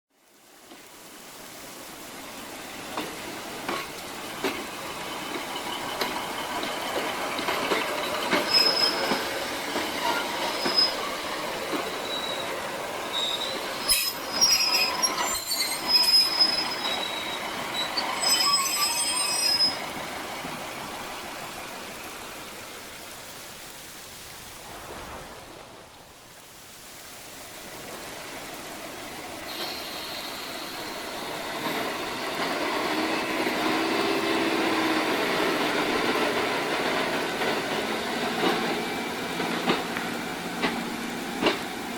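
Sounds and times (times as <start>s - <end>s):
diesel train engine: 2.2s - 22.4s, 28.0s - 41.9s
train clanks: 2.4s - 22.0s, 28.8s - 41.9s
train brakes squealing: 3.7s - 20.2s, 29.5s - 39.1s.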